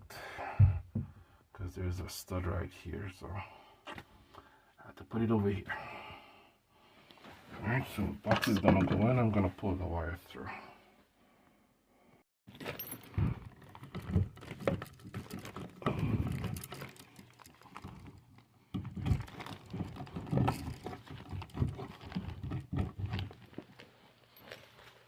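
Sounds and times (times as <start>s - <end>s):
rustling of cable: 12.5s - 25.0s.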